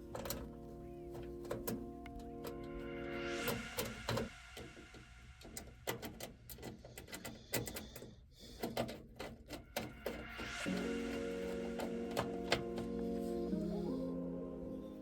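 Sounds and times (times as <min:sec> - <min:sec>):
screwdriver clicks and rattles: 0:05.4 - 0:12.9.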